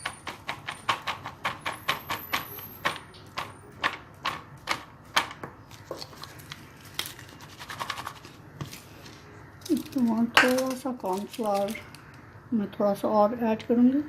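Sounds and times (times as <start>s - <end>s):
potato sticks tossed in bowl: 9.6s - 11.9s.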